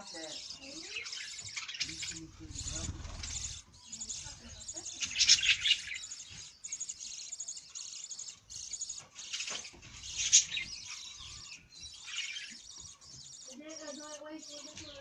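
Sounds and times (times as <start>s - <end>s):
budgerigars chirping: 0.0s - 15.0s.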